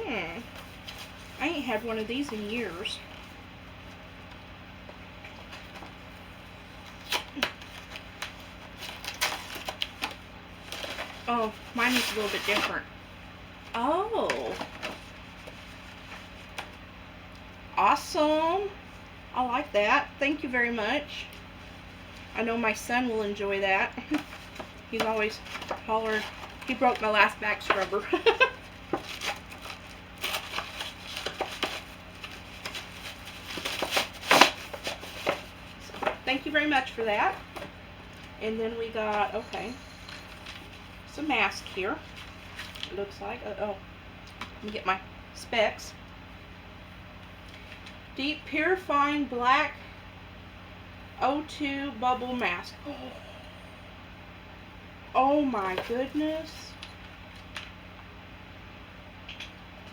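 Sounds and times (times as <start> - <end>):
faint room hum: 0.0 - 59.9
plastic packaging crinkling: 6.8 - 12.8, 23.9 - 43.2.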